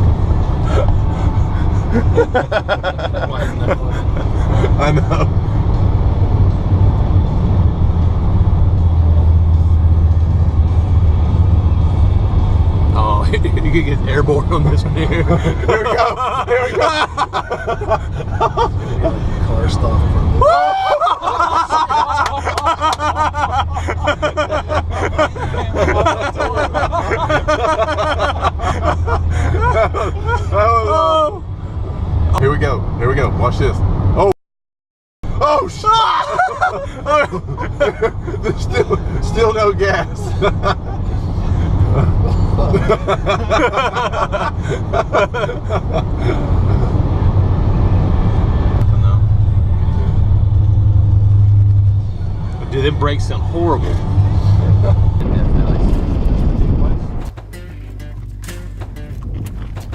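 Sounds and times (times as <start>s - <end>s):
car cabin road noise: 0.0s - 34.3s, 35.2s - 59.9s
people laughing: 0.7s - 5.4s, 14.9s - 19.5s, 20.6s - 30.9s, 36.1s - 47.0s.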